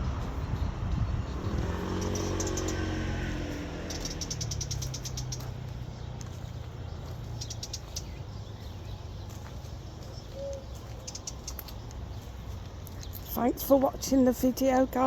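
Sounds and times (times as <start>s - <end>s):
steady low rumble: 0.0s - 13.9s
small birds chirping: 0.0s - 15.0s.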